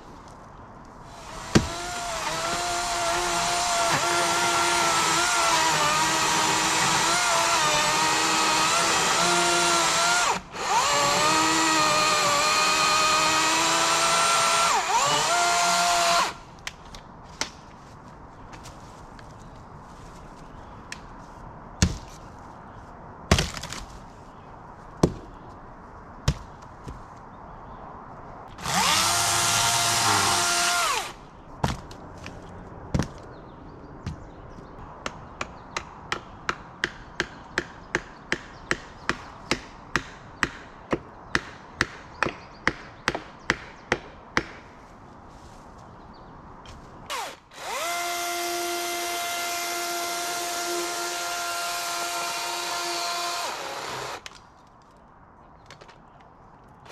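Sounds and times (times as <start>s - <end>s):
power tool motor whine: 47.1s - 54.2s.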